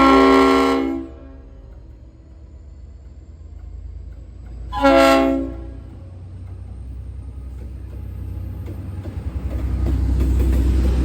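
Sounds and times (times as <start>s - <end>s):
locomotive air horn blast: 0.0s - 1.4s, 4.7s - 5.8s
locomotive low rumble: 0.0s - 11.0s.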